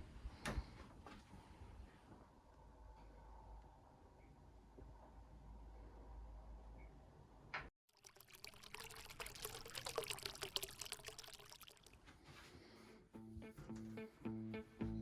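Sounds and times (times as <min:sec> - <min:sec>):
water pouring and splashing: 0:07.9 - 0:12.1.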